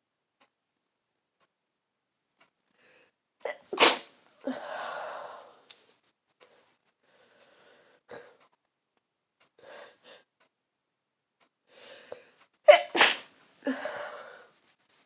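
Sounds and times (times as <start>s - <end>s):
woman sneezing: 3.7s - 4.1s, 12.7s - 13.8s.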